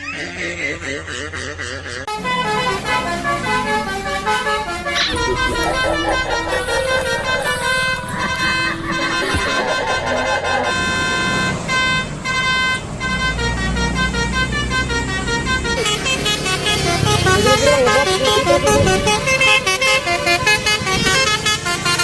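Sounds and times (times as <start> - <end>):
bus multi-tone horn melody: 1.9 - 22.0.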